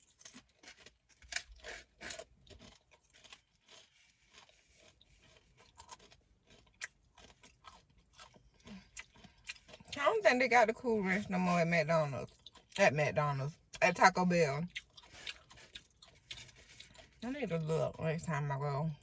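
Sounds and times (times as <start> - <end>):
person chewing crunchy food: 0.0 - 10.0, 11.4 - 12.8, 14.6 - 17.2.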